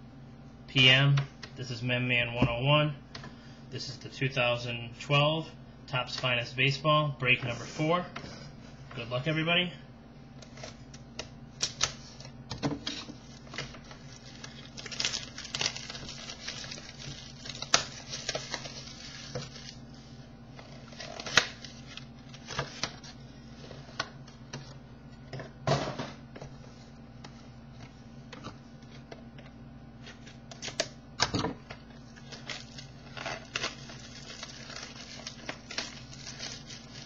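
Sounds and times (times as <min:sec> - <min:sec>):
card packs rustling: 0:11.6 - 0:19.9, 0:20.6 - 0:24.8, 0:31.8 - 0:37.0.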